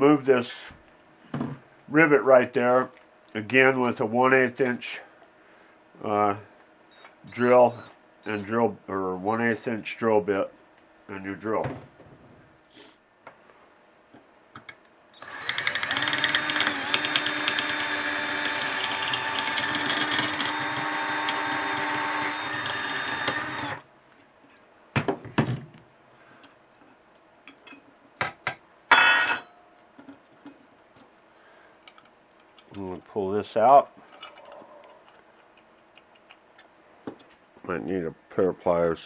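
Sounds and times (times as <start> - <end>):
electric drill running: 15.2 - 23.9.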